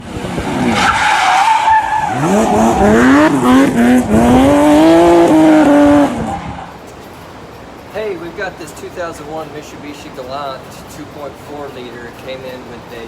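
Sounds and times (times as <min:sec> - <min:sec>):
car engine accelerating: 0:00.0 - 0:06.8.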